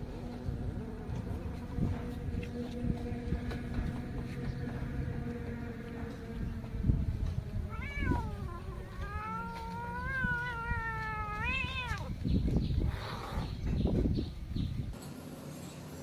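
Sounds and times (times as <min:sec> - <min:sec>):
cat meowing: 0:07.7 - 0:12.1.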